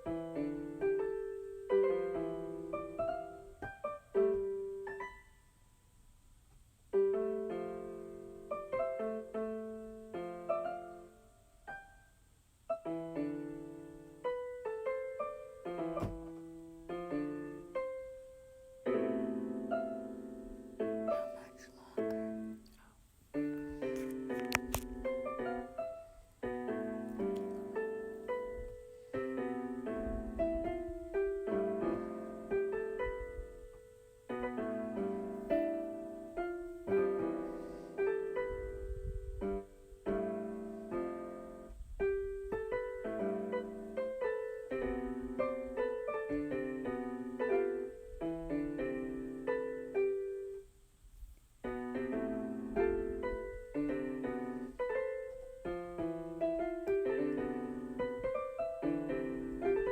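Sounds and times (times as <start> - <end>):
piano-like keyboard melody: 0.0 - 5.8, 6.9 - 22.6, 23.3 - 50.8, 51.6 - 59.9.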